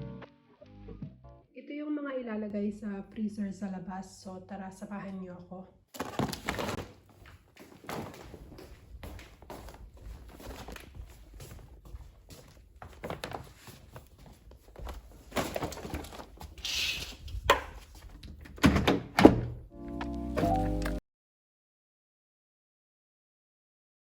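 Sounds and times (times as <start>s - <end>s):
music: 0.0s - 1.5s, 19.7s - 21.0s
frozen food bags thudding: 5.9s - 7.1s, 15.0s - 16.6s.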